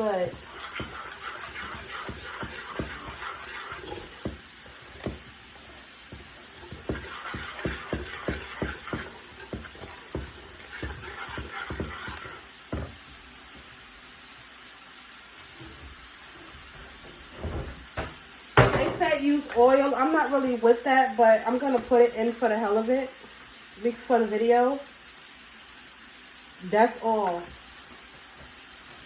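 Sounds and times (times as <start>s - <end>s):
spoon stirring batter in bowl: 0.0s - 13.7s
food sizzling in a pan: 0.0s - 29.0s.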